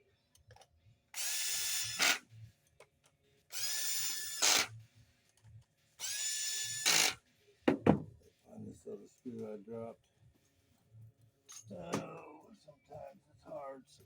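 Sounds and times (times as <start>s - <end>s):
power drill driving screws: 1.2s - 2.2s, 3.5s - 4.7s, 6.0s - 7.2s.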